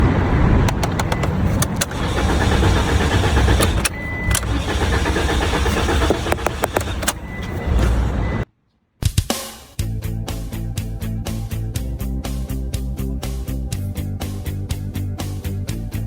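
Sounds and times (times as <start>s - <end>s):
car engine cranking: 0.6s - 8.4s.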